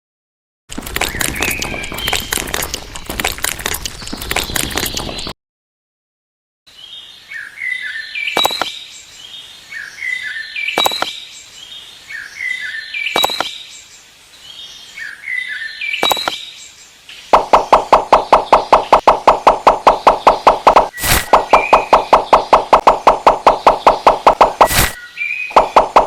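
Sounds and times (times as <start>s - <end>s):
bird chirps: 0.8s - 5.3s, 6.7s - 26.0s
sharp click: 8.4s - 8.8s, 10.8s - 11.2s, 13.2s - 13.6s, 16.0s - 16.4s.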